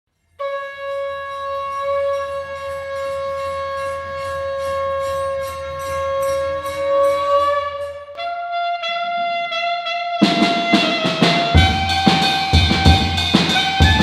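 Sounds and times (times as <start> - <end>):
conch shell blown: 0.4 - 14.0.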